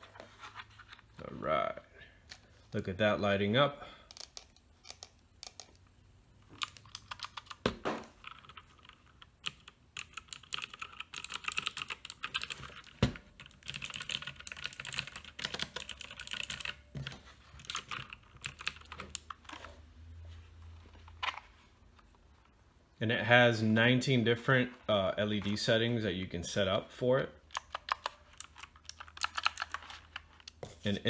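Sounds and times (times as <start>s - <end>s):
clicky mechanical keyboard typing: 6.6s - 7.6s, 8.2s - 16.9s, 17.6s - 19.4s, 27.5s - 30.6s.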